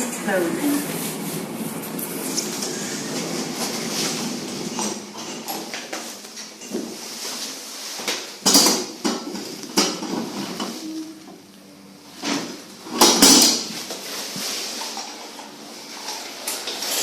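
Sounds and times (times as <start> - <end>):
lift car clanking and rattling: 1.8 - 7.0, 12.2 - 13.8.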